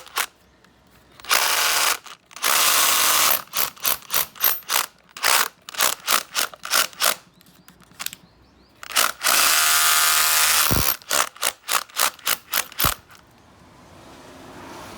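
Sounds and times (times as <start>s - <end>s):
hammer drill running: 1.2s - 7.2s, 8.8s - 13.2s.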